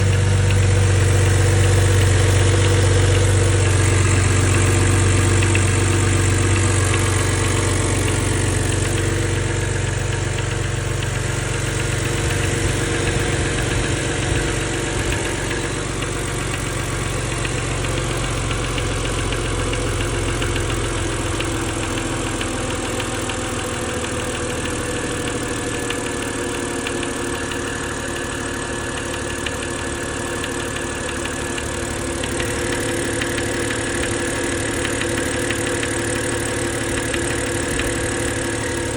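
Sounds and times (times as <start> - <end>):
car engine idling with knocking: 0.0 - 38.9.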